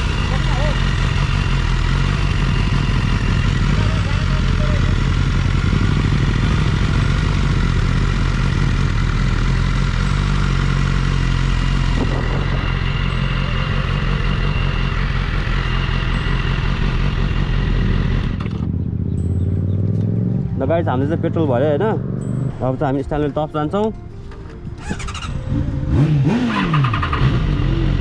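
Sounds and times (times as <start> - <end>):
motorcycle engine running: 0.0 - 23.8, 24.4 - 28.0.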